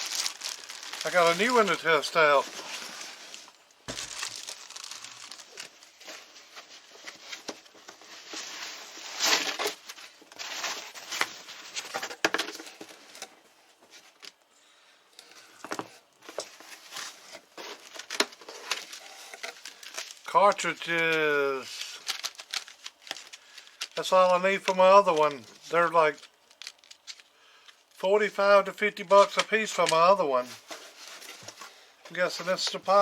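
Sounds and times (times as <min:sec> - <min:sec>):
packaging rustling and tearing: 0:00.0 - 0:12.2, 0:16.3 - 0:27.9.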